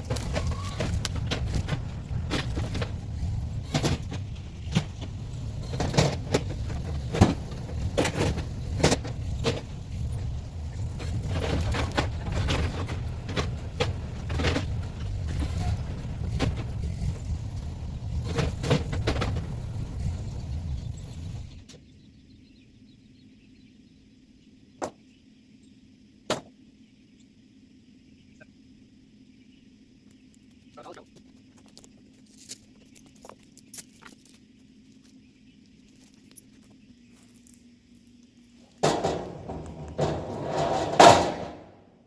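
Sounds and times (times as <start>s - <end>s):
engine running at low revs: 0.0s - 21.6s
knocks and clanks of wood or metal: 38.8s - 41.8s.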